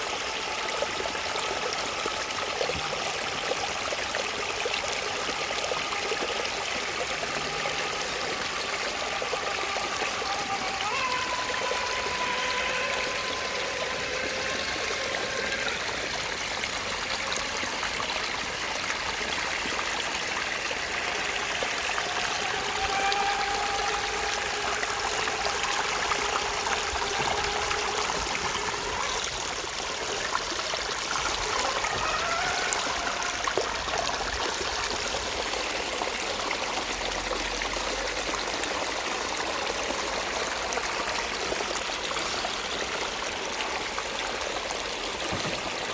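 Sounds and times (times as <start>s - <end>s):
flowing stream: 0.0s - 45.9s
toy truck electric motor whine: 5.0s - 45.7s.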